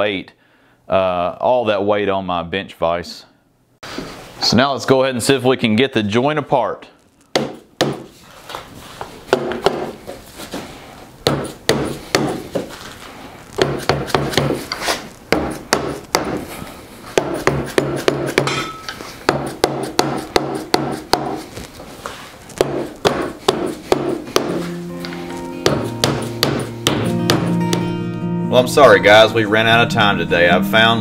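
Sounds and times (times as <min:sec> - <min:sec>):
hammer knocking on wood: 0:07.4 - 0:08.1, 0:09.3 - 0:10.0, 0:11.2 - 0:12.7, 0:13.6 - 0:14.6, 0:15.3 - 0:16.4, 0:17.2 - 0:18.6, 0:19.3 - 0:21.4, 0:22.6 - 0:24.6, 0:25.6 - 0:27.9.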